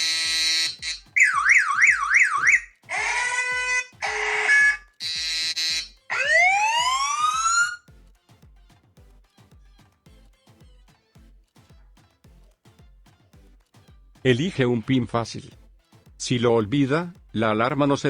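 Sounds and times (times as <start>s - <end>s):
alarm buzz: 0.0s - 7.8s
rising siren sweep: 0.0s - 7.8s
warbling siren: 0.0s - 7.8s
horn-like alarm tones: 0.0s - 8.1s
faint music beat: 0.0s - 18.0s.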